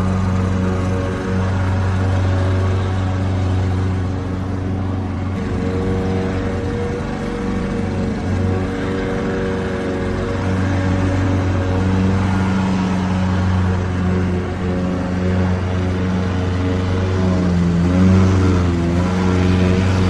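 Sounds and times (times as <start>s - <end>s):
lawnmower engine running: 0.0s - 20.0s.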